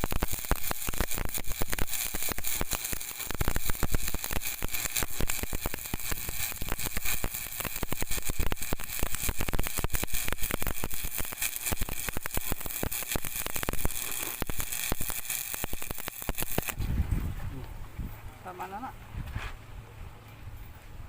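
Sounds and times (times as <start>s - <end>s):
welding arc crackling: 0.0s - 16.8s.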